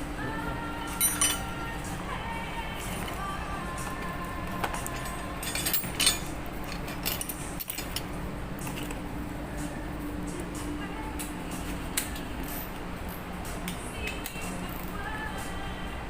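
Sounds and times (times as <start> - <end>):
low machinery hum: 0.0 - 16.0
metal tools clinking: 0.9 - 1.6, 4.6 - 9.0.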